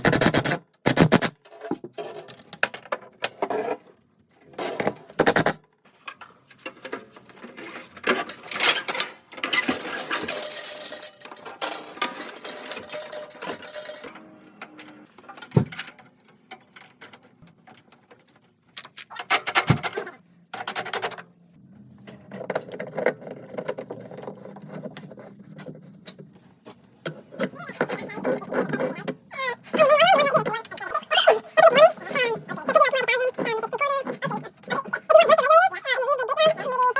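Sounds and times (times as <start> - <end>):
tools and metal parts handled: 1.4 - 5.2, 5.9 - 21.3.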